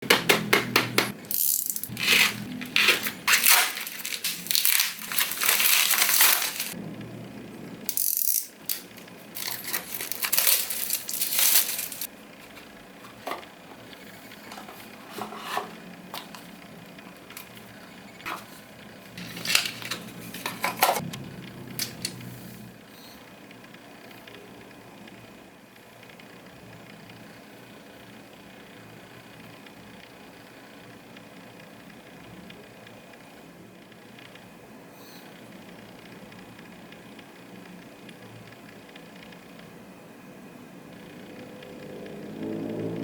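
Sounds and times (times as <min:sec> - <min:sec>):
packaging crinkling and rustling: 0:01.3 - 0:06.8, 0:07.9 - 0:13.2, 0:19.2 - 0:21.0.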